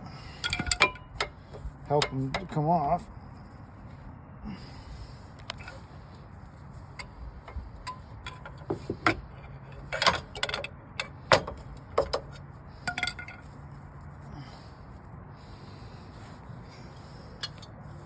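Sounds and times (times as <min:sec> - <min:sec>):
metallic clicks and clanks: 0:00.4 - 0:02.6, 0:07.0 - 0:13.4.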